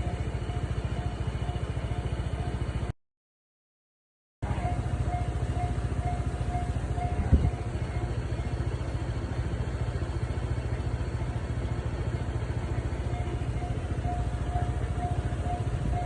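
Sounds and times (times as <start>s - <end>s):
engine idling: 0.0s - 2.9s, 4.4s - 16.0s
level crossing bell dinging: 13.0s - 16.0s.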